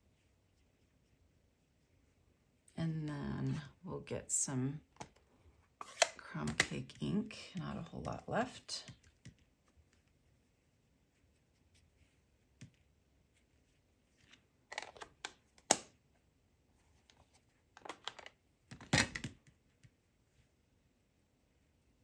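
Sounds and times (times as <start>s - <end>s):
craft supplies clicking and rustling: 5.8s - 7.0s, 14.7s - 15.9s, 17.8s - 19.4s.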